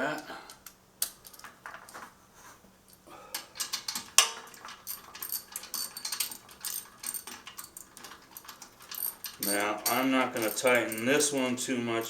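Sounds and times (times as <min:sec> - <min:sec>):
steel sockets clinking: 0:02.9 - 0:11.5.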